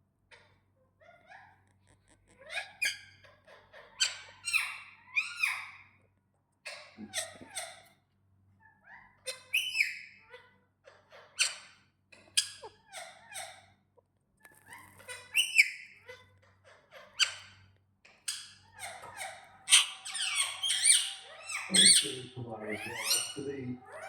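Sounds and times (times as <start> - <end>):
parrot squeaks chirps and whistles: 9.5 - 10.1, 14.8 - 16.0.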